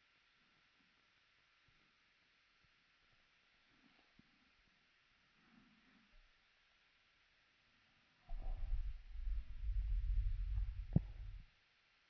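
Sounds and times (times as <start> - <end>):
stomach gurgles: 8.3 - 11.5.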